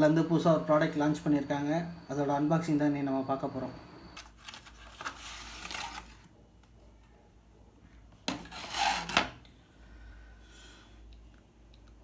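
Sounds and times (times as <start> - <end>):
packaging rubbing and scraping: 4.2 - 6.3, 8.3 - 9.3.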